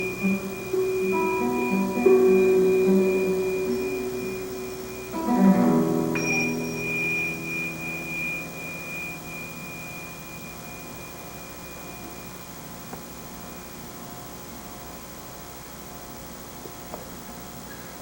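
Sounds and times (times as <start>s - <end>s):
plucked string instrument chord: 0.0s - 12.3s
faint steady hum: 0.0s - 18.0s.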